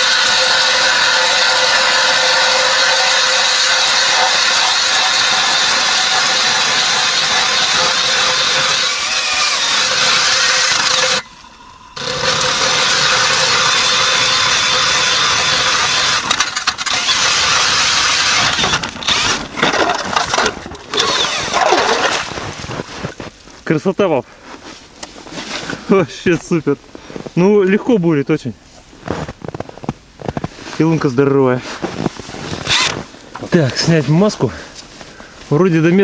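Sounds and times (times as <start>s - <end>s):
drill motor whining: 0.0s - 19.7s, 20.3s - 22.1s, 32.7s - 33.0s.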